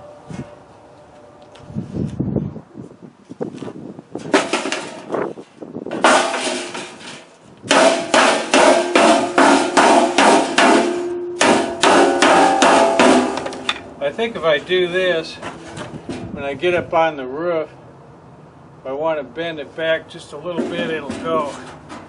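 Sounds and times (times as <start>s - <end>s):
hammer striking metal: 6.0s - 7.0s, 7.7s - 13.9s.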